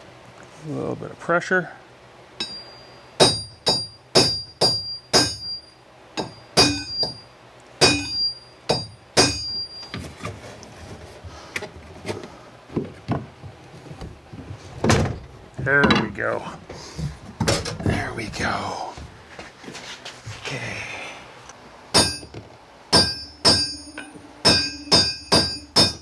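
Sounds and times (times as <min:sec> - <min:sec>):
hammer striking steel: 0:02.4 - 0:09.8, 0:22.0 - 0:26.0.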